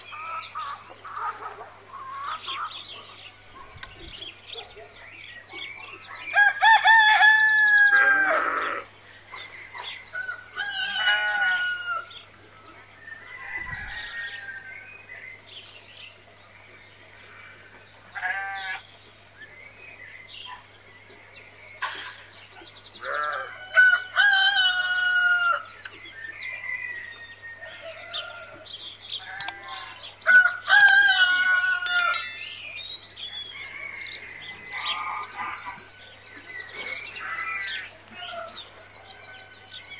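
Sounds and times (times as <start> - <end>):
roosters crowing: 6.4 - 8.8, 10.2 - 12.1.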